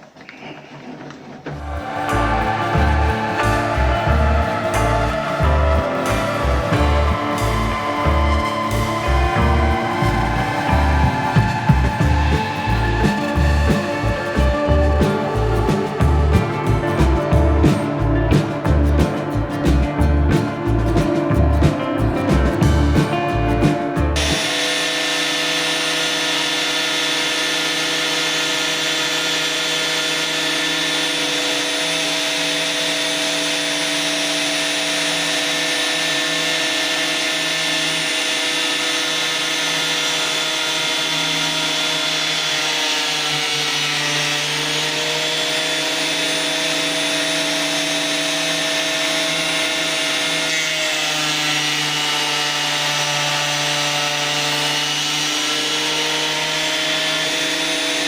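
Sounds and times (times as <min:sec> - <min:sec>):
electric planer motor whine: 0:24.2 - 0:58.0.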